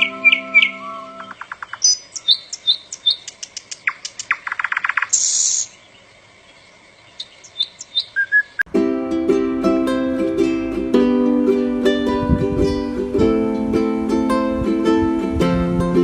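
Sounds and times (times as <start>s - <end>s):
held music chord: 0.0s - 1.3s, 8.7s - 16.0s
songbirds chirping: 0.0s - 8.7s.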